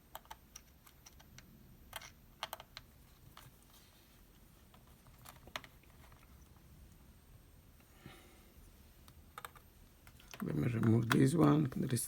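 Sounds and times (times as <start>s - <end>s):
tiny screws being handled: 0.1s - 3.5s.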